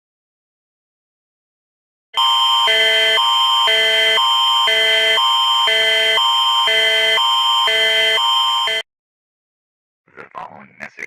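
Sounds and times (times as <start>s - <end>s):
electronic alarm alternating chords: 2.2s - 8.8s
steady high tone: 2.2s - 8.8s.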